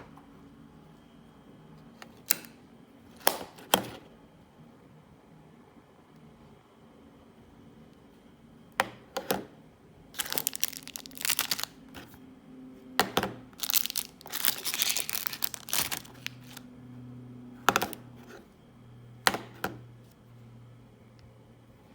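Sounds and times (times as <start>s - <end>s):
wrapping crinkling: 10.2s - 12.1s, 13.6s - 16.6s.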